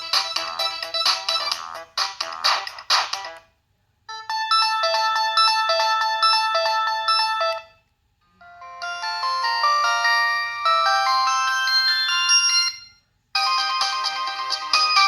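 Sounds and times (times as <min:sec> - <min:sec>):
electronic phone ringtone: 0:04.1 - 0:07.8, 0:08.4 - 0:15.0
bright electronic melody: 0:08.4 - 0:15.0.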